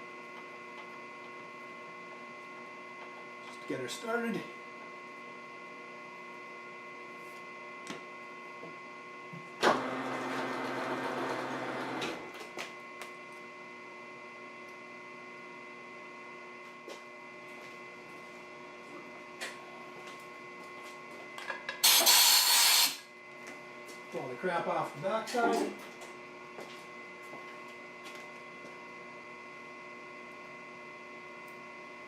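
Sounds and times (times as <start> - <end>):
machine-tool motor humming: 9.6 - 12.3.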